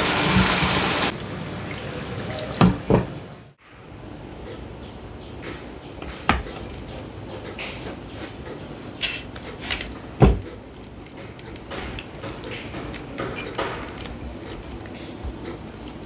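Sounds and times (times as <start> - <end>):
heavy thump: 10.2 - 10.5.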